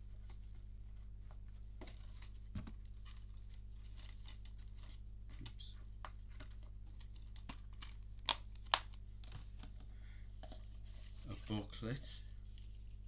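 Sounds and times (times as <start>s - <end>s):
cards and packaging rustling: 1.8s - 12.0s
steady low hum: 3.1s - 7.2s.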